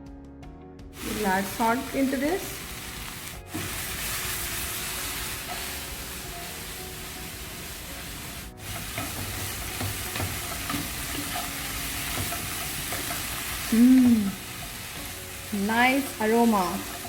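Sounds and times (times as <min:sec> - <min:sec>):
vegetables sizzling in a pan: 0:01.0 - 0:17.0
spatula tapping a pan: 0:08.6 - 0:13.6
person humming: 0:13.7 - 0:14.5.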